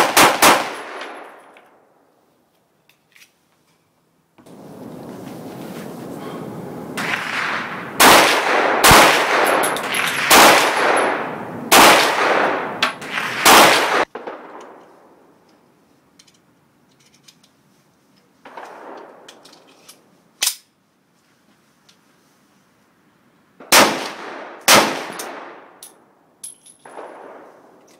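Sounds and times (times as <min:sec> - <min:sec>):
pistol shots with echo: 0:00.0 - 0:01.4, 0:07.0 - 0:14.8, 0:23.6 - 0:25.8, 0:26.8 - 0:27.5
sharp crack: 0:06.8 - 0:14.8.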